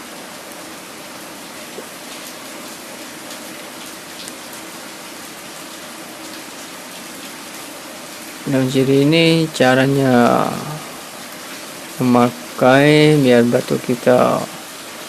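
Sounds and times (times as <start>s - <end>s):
steady hiss: 4.4s - 15.0s.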